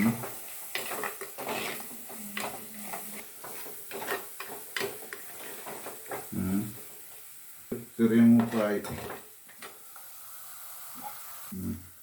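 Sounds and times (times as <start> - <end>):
metal spoon scraping pan: 0.1 - 6.3, 8.4 - 9.2.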